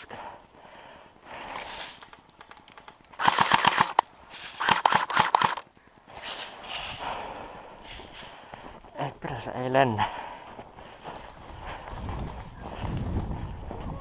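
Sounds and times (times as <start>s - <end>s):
airsoft rifle full-auto bursts: 3.2s - 5.6s.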